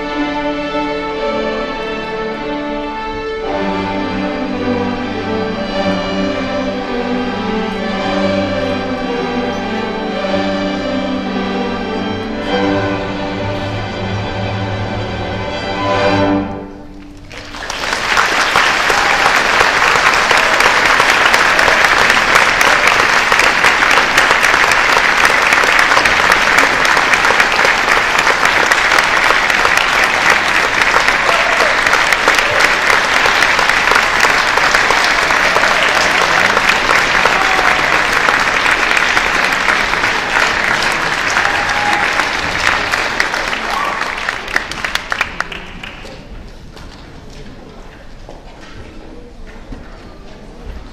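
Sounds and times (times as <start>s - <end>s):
audience applauding: 17.0s - 46.4s.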